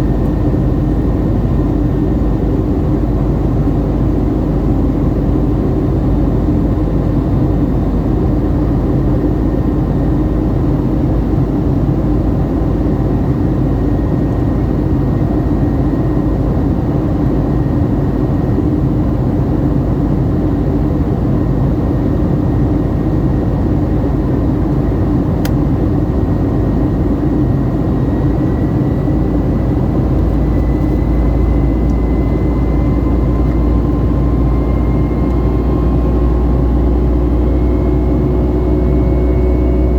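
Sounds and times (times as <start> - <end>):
jet engine and airflow noise: 0.0 - 39.9
faint high whine: 27.6 - 39.9.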